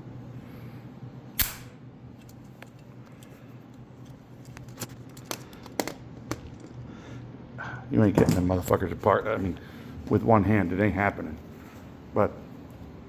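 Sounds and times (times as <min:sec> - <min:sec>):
magnetic rails snapping together: 0:01.4 - 0:01.8.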